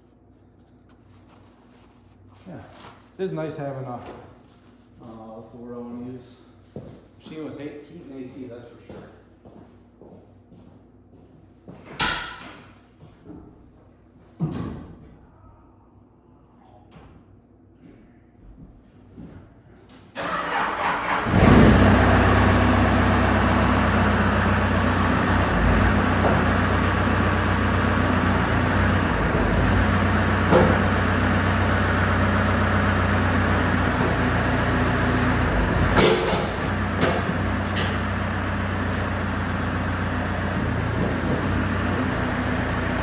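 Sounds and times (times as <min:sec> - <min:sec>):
diesel engine running: 0:20.2 - 0:43.0
starter cranking: 0:20.2 - 0:43.0.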